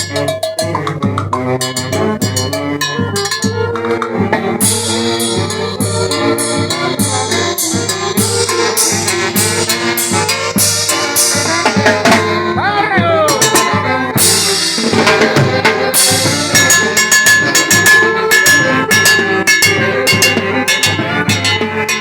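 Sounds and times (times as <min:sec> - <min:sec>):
drum kit beat: 0:00.0 - 0:22.0
brass horns playing: 0:04.2 - 0:20.2.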